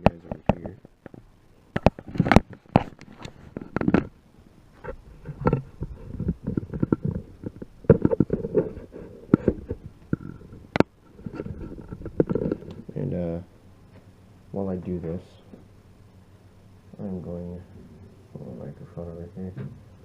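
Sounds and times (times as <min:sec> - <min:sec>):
microphone rubbing and rumbling: 0:00.0 - 0:13.3.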